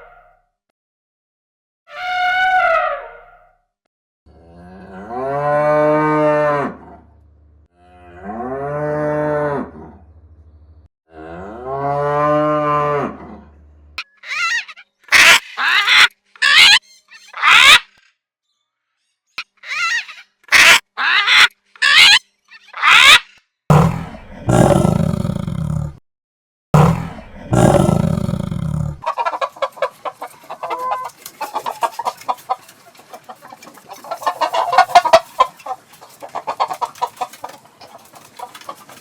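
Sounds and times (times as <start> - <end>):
cow mooing: 23.7 - 26.0, 26.8 - 29.0
animal making sharp calls: 26.8 - 29.2.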